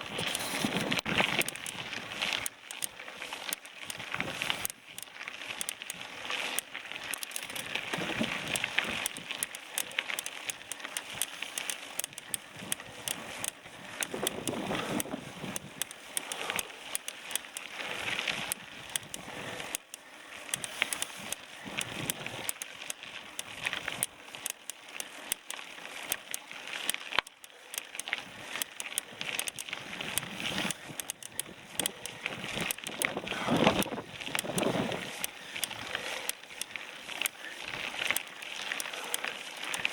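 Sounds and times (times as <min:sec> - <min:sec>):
bicycle clicks and rattles: 0:00.0 - 0:39.9
bicycle tyres rolling on rough track: 0:00.0 - 0:39.9
wind buffeting microphone: 0:12.2 - 0:15.8, 0:29.9 - 0:35.2.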